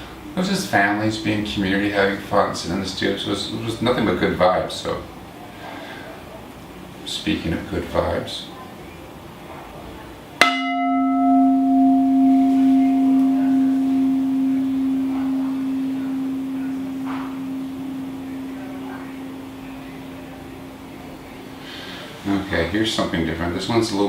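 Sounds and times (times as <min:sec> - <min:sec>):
resonant vessel struck and ringing: 0:10.4 - 0:21.7.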